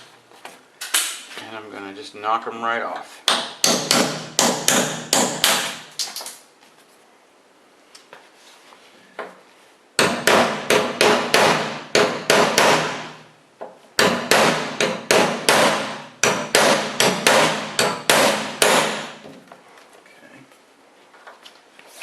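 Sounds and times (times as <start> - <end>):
hammer striking metal chisel: 3.3 - 5.9, 10.0 - 13.2, 14.0 - 19.2.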